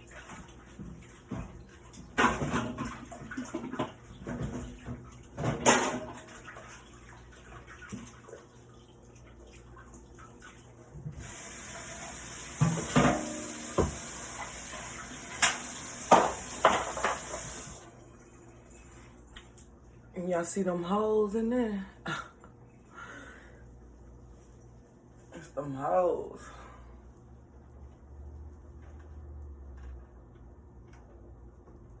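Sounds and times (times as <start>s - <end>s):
kitchen tap running: 0.0s - 19.6s
dishes knocking and clattering: 1.3s - 6.2s, 12.6s - 14.0s, 15.4s - 17.6s.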